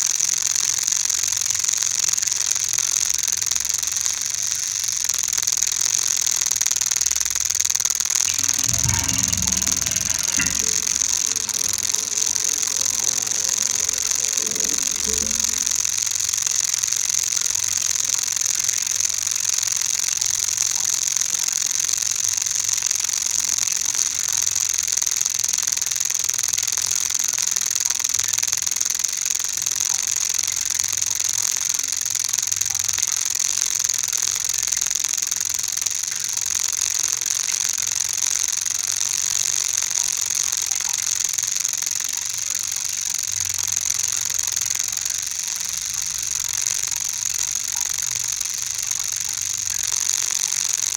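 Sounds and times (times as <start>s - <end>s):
grating mechanical rattle with hiss: 0.0s - 27.8s, 28.5s - 50.9s.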